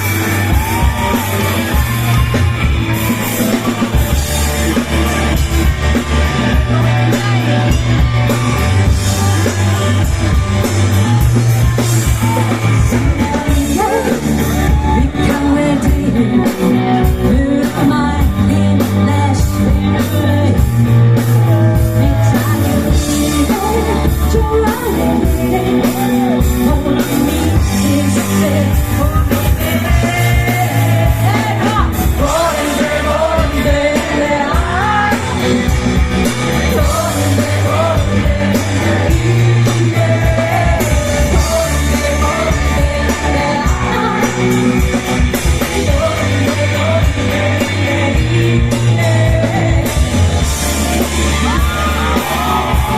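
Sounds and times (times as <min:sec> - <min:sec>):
live rock band playing: 0:00.0 - 0:52.9
person singing: 0:04.6 - 0:52.9.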